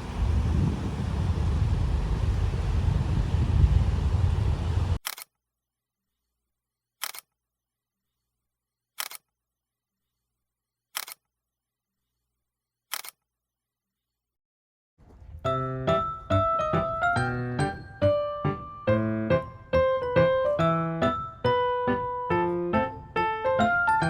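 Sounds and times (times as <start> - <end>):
vehicle road and wind noise: 0.0 - 5.0
camera shutter clicks: 5.0 - 5.3, 7.0 - 7.3, 9.0 - 9.3, 11.0 - 11.2, 12.9 - 13.2.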